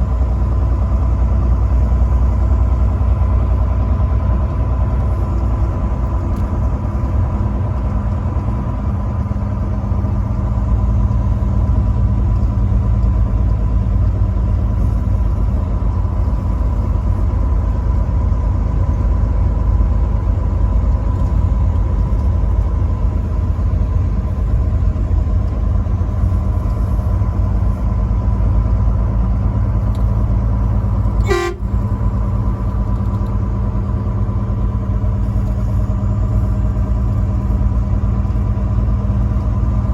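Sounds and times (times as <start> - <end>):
road rumble: 0.0 - 39.9
truck engine drone: 0.0 - 39.9.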